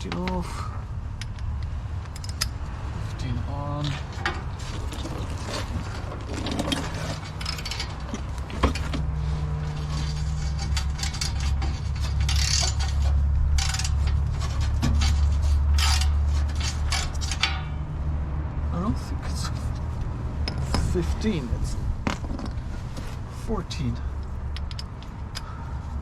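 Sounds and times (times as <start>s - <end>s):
wrench clicking and scraping metal: 1.2s - 2.6s, 9.8s - 17.7s, 24.2s - 25.6s.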